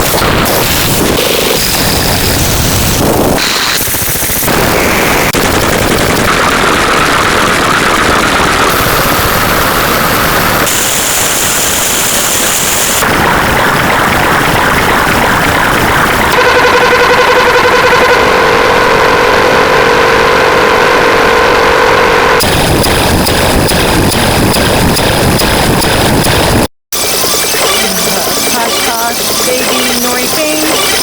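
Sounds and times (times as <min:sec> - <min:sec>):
harsh distorted sound effects: 0:00.0 - 0:31.0
steady high tone: 0:27.0 - 0:31.0.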